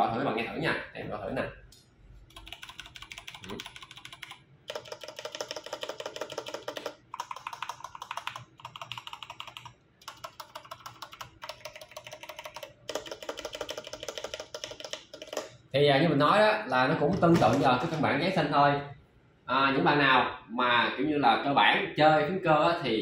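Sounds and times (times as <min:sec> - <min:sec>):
mechanical keyboard typing: 0:02.3 - 0:15.6.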